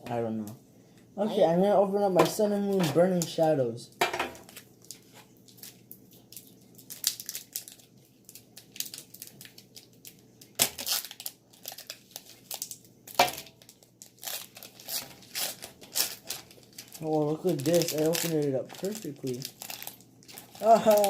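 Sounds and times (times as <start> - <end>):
foil wrapper crinkling: 4.4 - 21.0.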